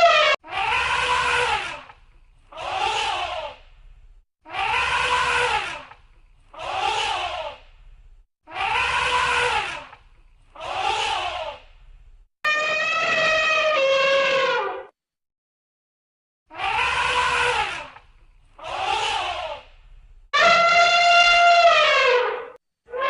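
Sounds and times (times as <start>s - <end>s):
elephant trumpeting: 12.5s - 14.8s, 20.4s - 23.0s.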